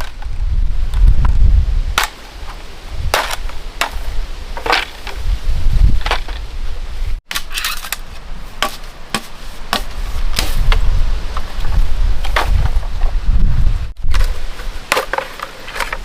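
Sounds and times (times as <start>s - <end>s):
sharp chopping knocks: 3.1s - 4.0s.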